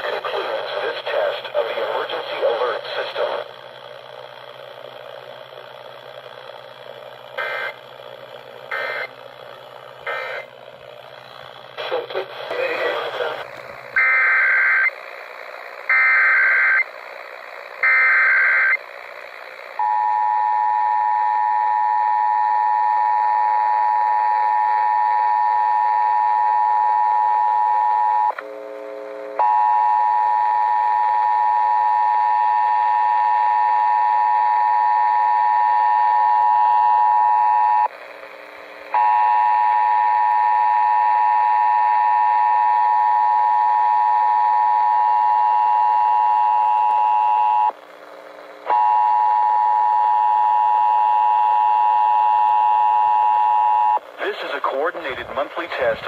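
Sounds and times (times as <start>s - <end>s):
digital header data bursts: 8.7s - 9.1s.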